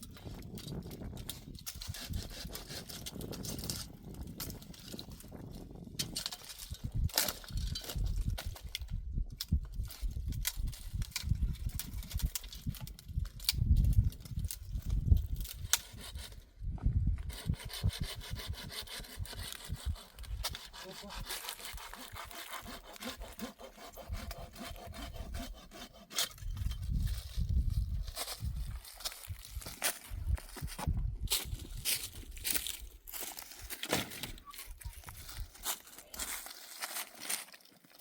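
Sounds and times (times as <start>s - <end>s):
hand saw cutting wood: 1.7s - 3.8s, 15.5s - 16.4s, 17.3s - 26.8s.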